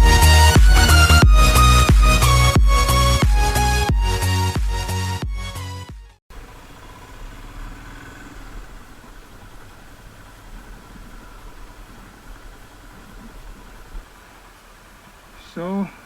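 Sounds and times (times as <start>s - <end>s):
vehicle engine idling: 6.3s - 16.0s.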